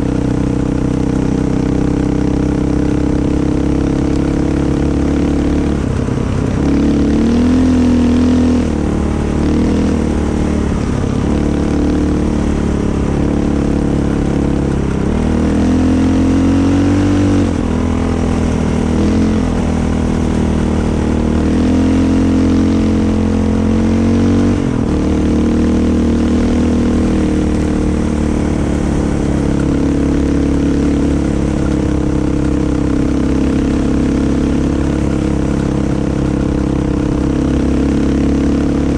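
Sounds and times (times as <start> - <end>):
off-road vehicle engine revving: 0.0 - 38.9.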